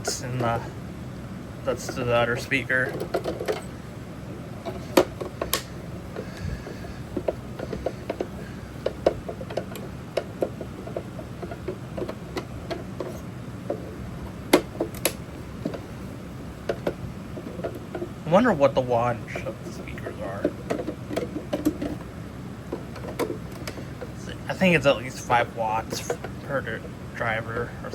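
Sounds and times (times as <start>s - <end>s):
steady low hum: 0.0s - 27.9s
plastic speaker cabinet clicks and knocks: 1.9s - 3.7s, 4.6s - 18.2s, 19.4s - 24.2s.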